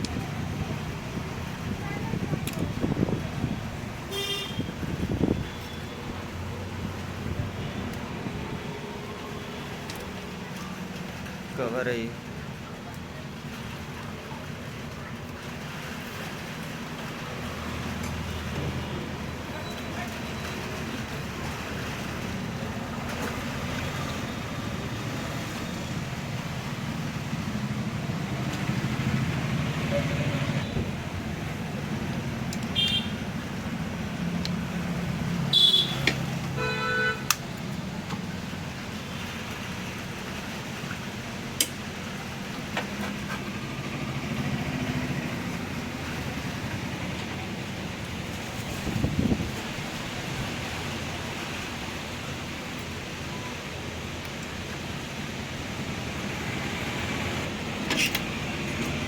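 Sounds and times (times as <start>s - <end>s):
road traffic passing: 0.0s - 59.0s
vehicle horn honking: 4.1s - 4.7s, 32.8s - 33.2s, 35.5s - 37.3s.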